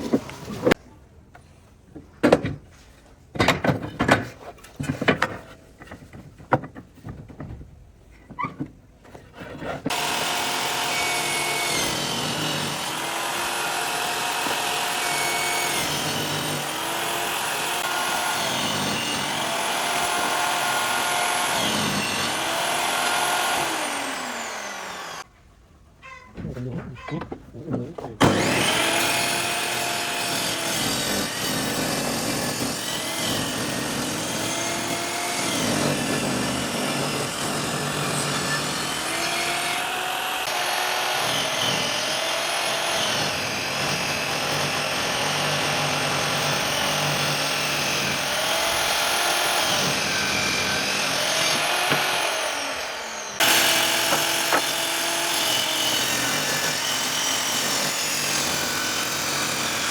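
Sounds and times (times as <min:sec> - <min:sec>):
power tool cutting wood: 0:09.9 - 0:25.3, 0:28.2 - 0:59.9.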